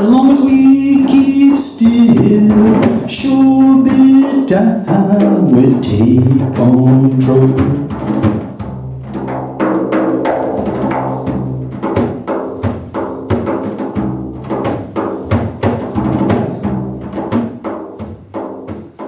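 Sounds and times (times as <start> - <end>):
drums in quick rhythm: 0.0 - 19.0
held low chords: 1.8 - 3.7, 5.5 - 8.2.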